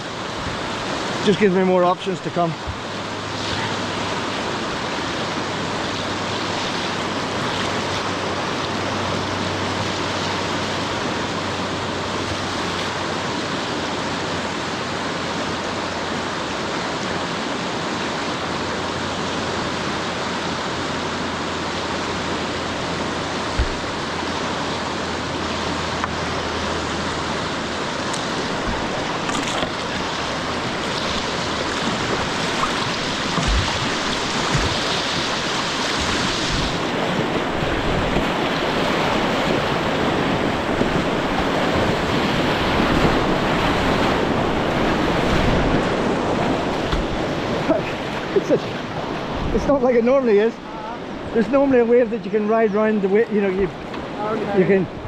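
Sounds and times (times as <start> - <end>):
river rapids rushing: 0.0 - 55.0
brief knock: 23.5 - 23.9.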